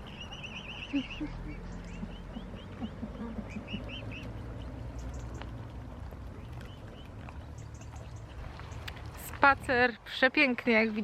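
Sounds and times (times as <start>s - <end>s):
ducks quacking: 0.0s - 5.5s
low steady rumble: 0.1s - 10.3s.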